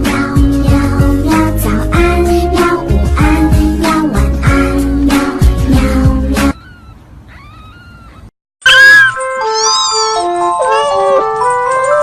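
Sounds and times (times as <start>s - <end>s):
cat meowing: 6.5s - 10.0s.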